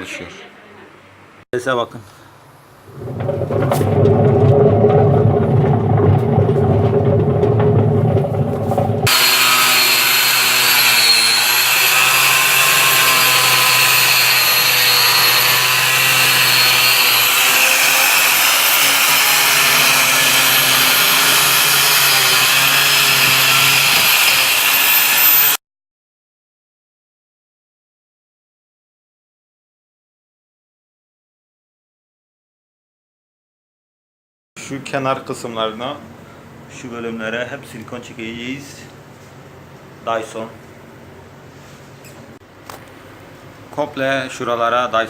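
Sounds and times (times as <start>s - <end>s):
washing machine drum rumbling: 2.7s - 9.1s
power tool whining: 2.9s - 25.6s.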